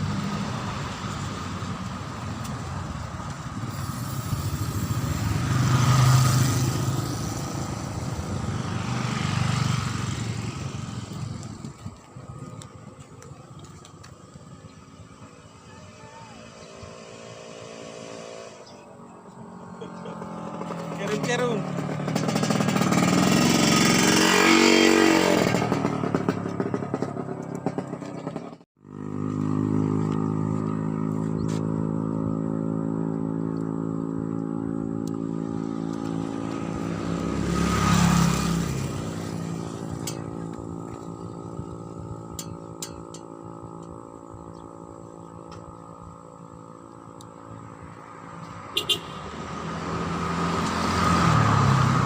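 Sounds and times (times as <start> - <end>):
motor engine running: 25.1 - 49.1.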